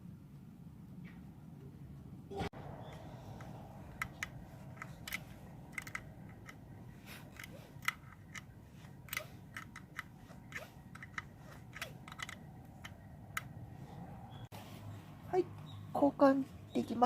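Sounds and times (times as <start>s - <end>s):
hand tools clicking on metal parts: 3.4s - 13.6s.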